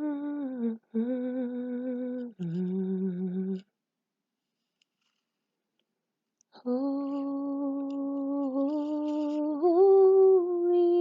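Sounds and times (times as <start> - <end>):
person humming: 0.0 - 3.6, 6.6 - 11.0.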